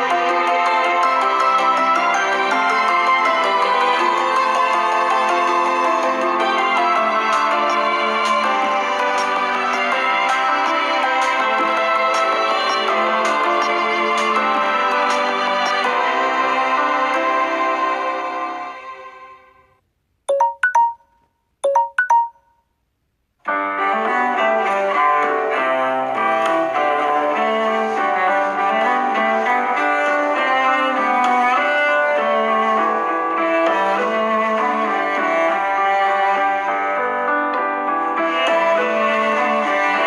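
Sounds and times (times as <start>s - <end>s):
ringtone melody: 0.0s - 16.3s, 20.3s - 22.6s
quick chime notes: 20.3s - 22.4s
melodic ringtone with piano notes: 20.3s - 22.6s.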